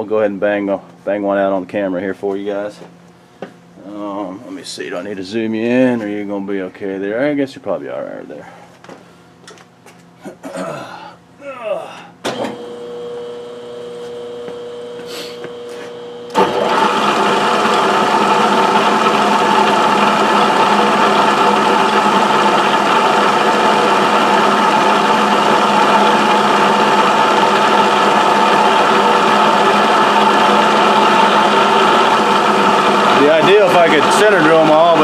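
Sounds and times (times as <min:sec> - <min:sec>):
milling machine motor running: 0:12.4 - 0:35.0.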